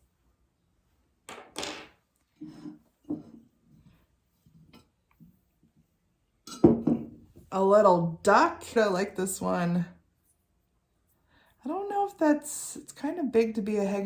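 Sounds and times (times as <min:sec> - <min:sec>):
small objects clacking on a tabletop: 0:01.3 - 0:02.0.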